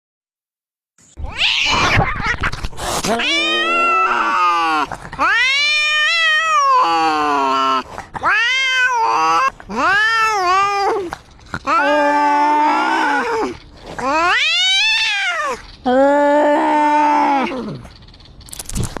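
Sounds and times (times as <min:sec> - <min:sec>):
cat yowling: 0:01.2 - 0:02.5, 0:03.1 - 0:15.6.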